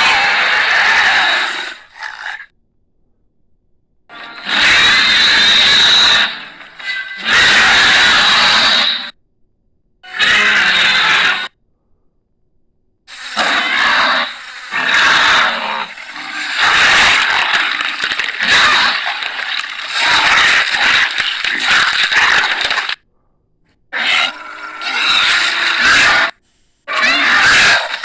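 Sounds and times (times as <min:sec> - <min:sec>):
dinosaur roars and growls: 0:00.0 - 0:02.5, 0:04.1 - 0:09.2, 0:10.0 - 0:11.6, 0:13.1 - 0:23.0, 0:23.9 - 0:28.0.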